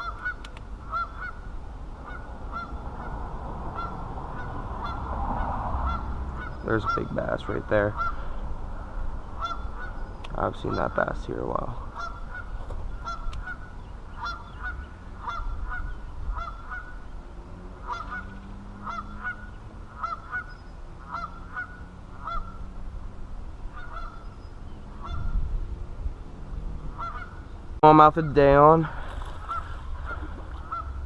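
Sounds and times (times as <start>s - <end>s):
bird honking calls: 0.0s - 8.4s, 9.3s - 11.1s, 11.8s - 22.7s, 23.7s - 25.4s, 26.8s - 28.6s, 29.3s - 31.0s
low rumble: 0.0s - 10.3s.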